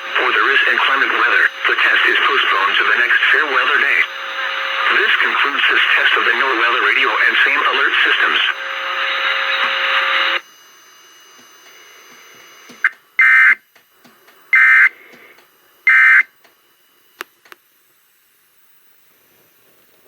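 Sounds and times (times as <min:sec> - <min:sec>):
faint radio hiss: 0:00.0 - 0:08.6
broadcast audio: 0:00.0 - 0:10.4
digital data tone bursts: 0:12.8 - 0:13.6, 0:14.5 - 0:15.0, 0:15.9 - 0:16.3.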